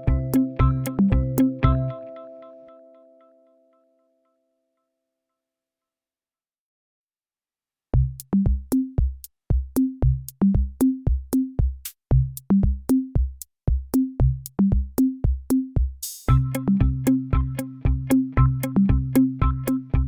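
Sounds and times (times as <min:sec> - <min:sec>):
electronic music with drum beat: 0:00.0 - 0:02.0, 0:08.0 - 0:20.0.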